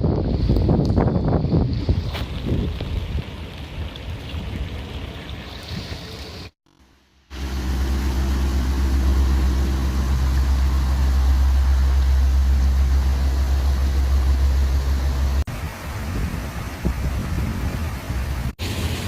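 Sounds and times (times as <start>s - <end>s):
engine running with low hum: 6.0s - 19.0s.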